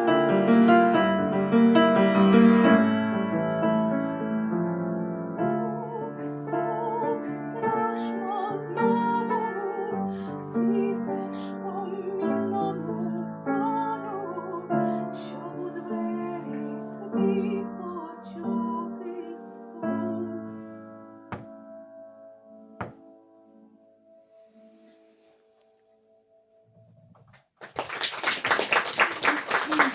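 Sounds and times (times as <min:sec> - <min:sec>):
piano chords: 0:00.0 - 0:25.3
woman singing with vibrato: 0:05.4 - 0:20.5.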